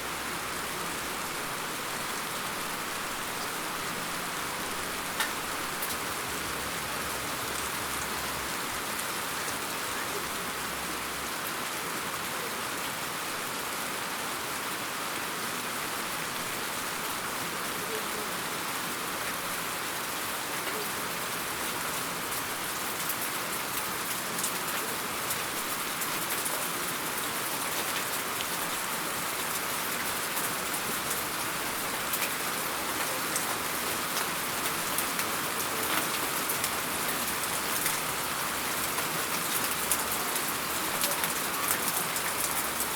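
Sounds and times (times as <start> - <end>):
raindrop ticks: 5.2 - 6.0.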